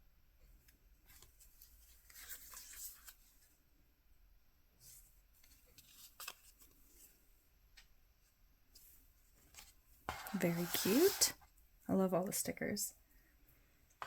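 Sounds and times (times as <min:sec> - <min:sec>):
trading cards rustling: 0:10.2 - 0:11.4.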